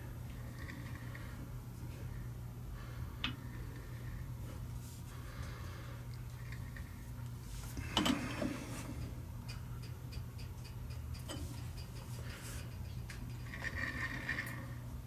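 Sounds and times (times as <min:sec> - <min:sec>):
even ticks: 0:09.0 - 0:12.1.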